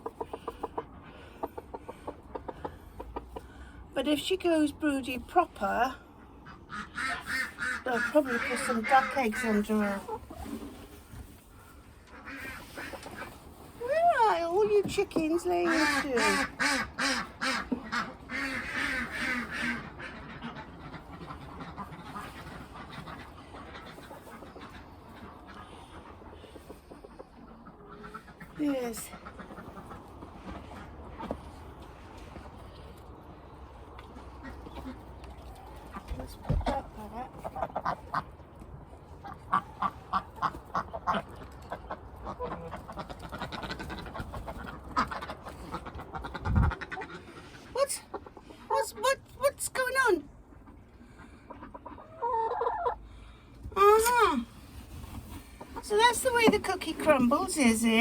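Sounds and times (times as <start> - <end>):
ducks quacking: 5.6 - 10.4, 12.0 - 13.4, 14.6 - 31.5, 34.1 - 38.5, 39.2 - 53.0.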